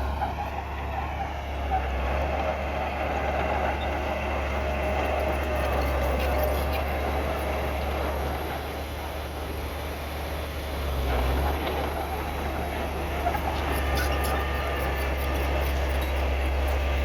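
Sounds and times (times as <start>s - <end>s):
diesel earthmoving machinery running: 0.0s - 17.0s.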